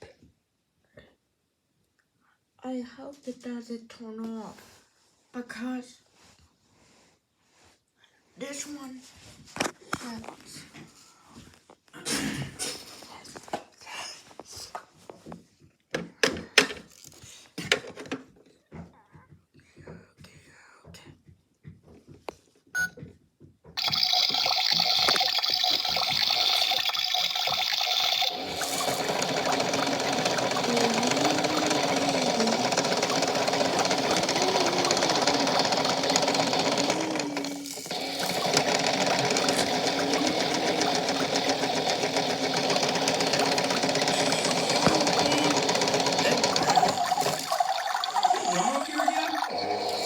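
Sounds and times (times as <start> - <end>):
toy machine mechanical churning: 23.8 - 50.0.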